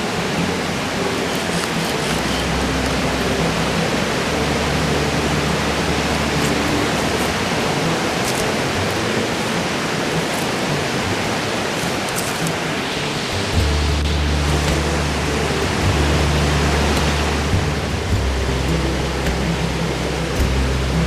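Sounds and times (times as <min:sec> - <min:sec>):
steady rushing noise: 0:00.0 - 0:21.0.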